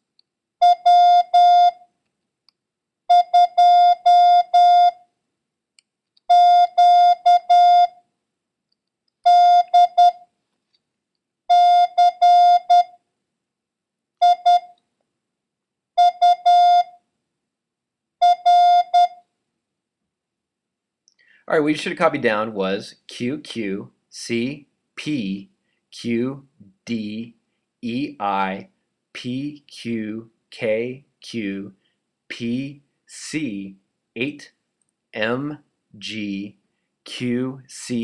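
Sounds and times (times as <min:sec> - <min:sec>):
morse code beeps: 0:00.6 - 0:01.8, 0:03.1 - 0:05.0, 0:06.3 - 0:07.9, 0:09.3 - 0:10.2, 0:11.5 - 0:12.9, 0:14.2 - 0:14.7, 0:16.0 - 0:16.9, 0:18.2 - 0:19.2.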